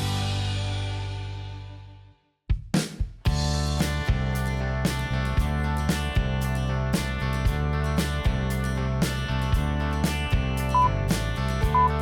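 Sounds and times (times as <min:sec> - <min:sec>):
music beat: 0:10.7 - 0:11.0, 0:11.6 - 0:12.0.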